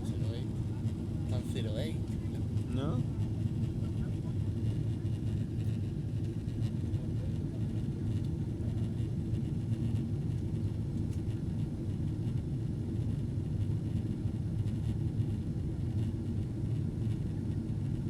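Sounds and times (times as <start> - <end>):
airliner cabin rumble: 0.0 - 18.0.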